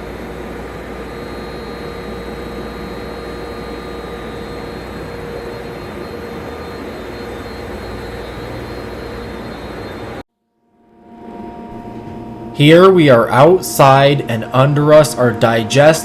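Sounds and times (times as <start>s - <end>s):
whining machine tones: 0.0s - 16.0s.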